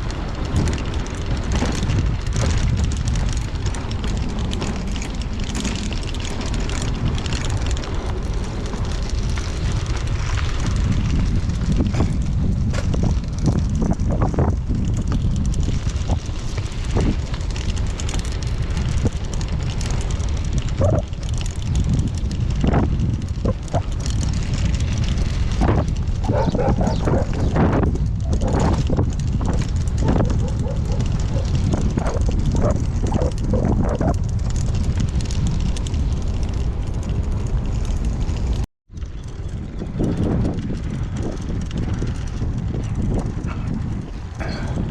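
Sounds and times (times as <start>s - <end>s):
steady low rumble: 0.0s - 44.9s
tyres crackling on road: 0.0s - 44.9s
wind rushing over microphone: 0.0s - 44.9s.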